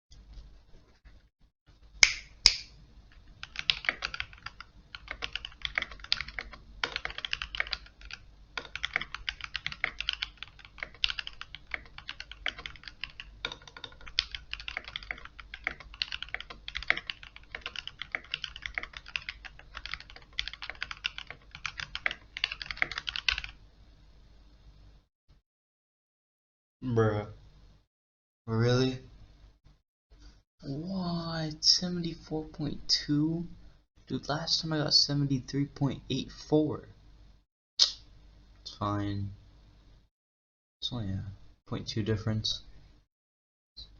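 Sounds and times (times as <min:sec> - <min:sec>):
mechanical keyboard typing: 0:03.4 - 0:23.6
sharp keyboard clacks: 0:03.4 - 0:23.6.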